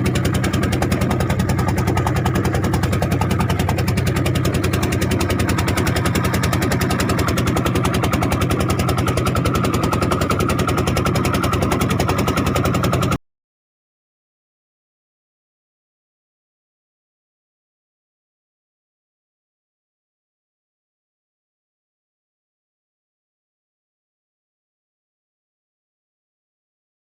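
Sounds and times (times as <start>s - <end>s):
boat engine pulsing: 0.0s - 13.2s.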